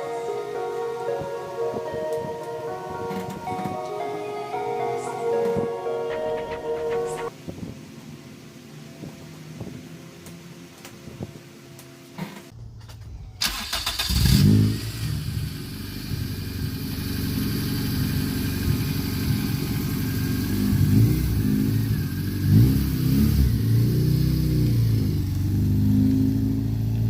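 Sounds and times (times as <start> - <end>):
car engine cranking and revving: 12.5 - 27.0.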